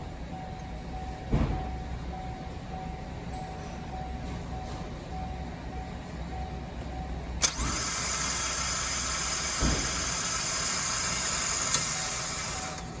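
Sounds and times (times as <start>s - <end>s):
low thump: 1.3s - 1.8s, 9.6s - 10.0s.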